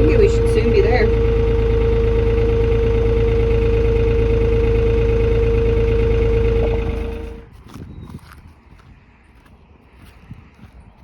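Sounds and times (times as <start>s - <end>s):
vehicle engine running: 0.0s - 7.6s.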